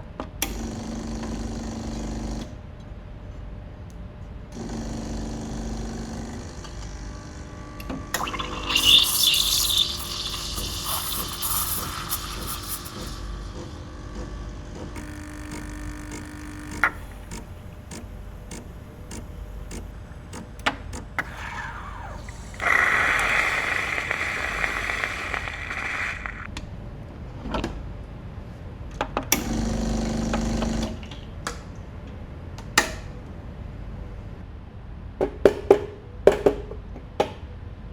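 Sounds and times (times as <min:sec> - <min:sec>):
liquid pouring: 0:08.2 - 0:13.8, 0:16.8 - 0:26.5.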